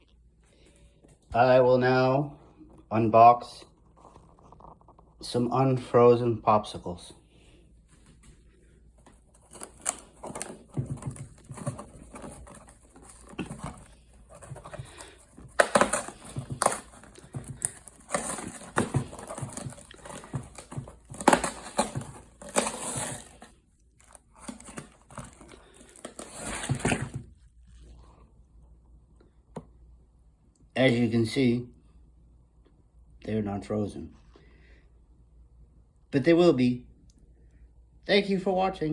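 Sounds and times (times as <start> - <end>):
packaging crinkling and tearing: 9.3 - 27.3.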